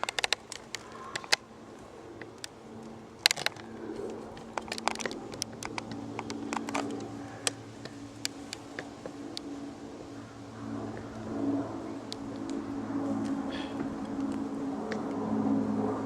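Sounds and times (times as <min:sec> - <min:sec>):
puzzle cube plastic clicks: 0:00.0 - 0:01.4, 0:04.6 - 0:07.0
low steady hum: 0:00.0 - 0:16.0.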